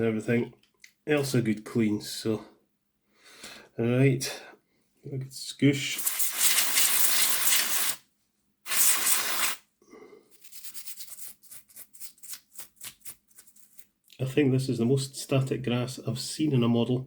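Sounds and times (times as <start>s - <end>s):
aerosol spray hissing: 6.0s - 8.0s, 8.7s - 9.6s.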